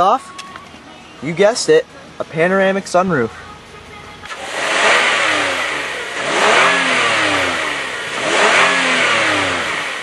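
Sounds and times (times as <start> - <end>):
car engine revving: 3.6 - 10.0.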